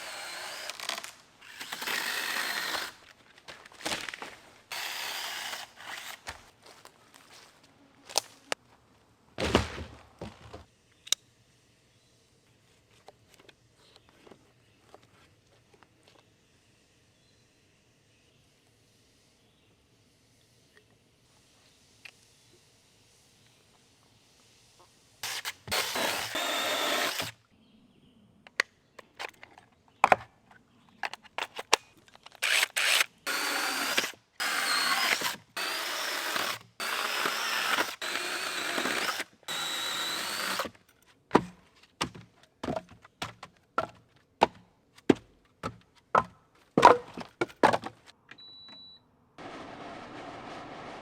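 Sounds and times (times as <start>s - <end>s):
mini chainsaw cutting wood: 0.0s - 3.0s, 3.9s - 6.4s, 25.2s - 27.4s, 32.4s - 40.8s
wood pieces knocking: 45.6s - 48.0s.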